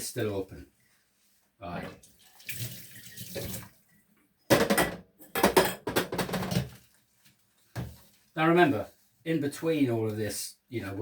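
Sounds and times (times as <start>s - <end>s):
dishes being washed: 1.8s - 3.9s
tap water splashing into sink: 1.9s - 3.8s.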